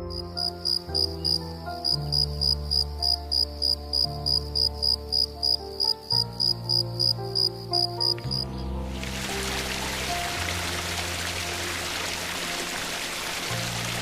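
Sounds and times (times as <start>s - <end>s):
soft background music: 0.0s - 14.0s
cricket chirping: 0.1s - 8.6s.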